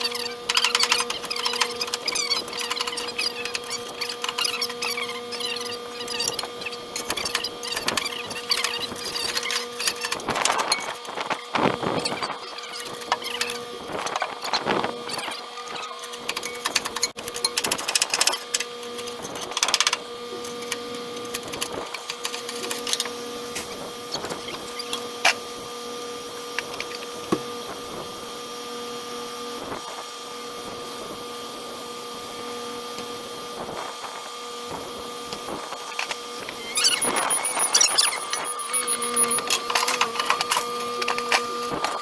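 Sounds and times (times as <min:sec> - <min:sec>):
machine humming: 0:36.5 - 0:42.0.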